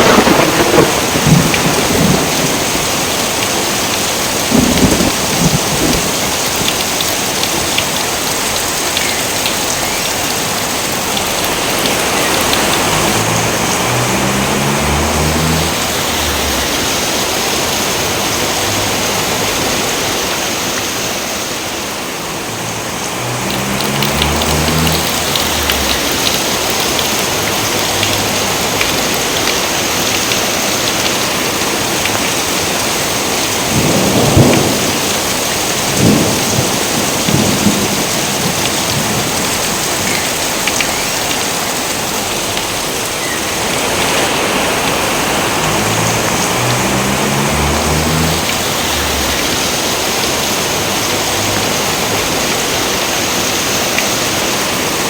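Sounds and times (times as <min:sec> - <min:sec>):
thunder claps: 0:00.0 - 0:08.0, 0:11.1 - 0:19.8, 0:33.4 - 0:40.1
heavy rain: 0:00.0 - 0:55.0.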